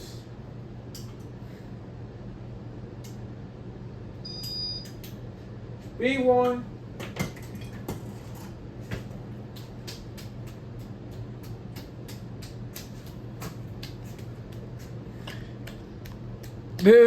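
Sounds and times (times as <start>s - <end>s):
ceiling fan motor hum: 0.0s - 17.0s
fan ticks and clicks: 0.8s - 1.4s, 3.0s - 3.3s, 4.4s - 5.3s, 6.0s - 17.0s.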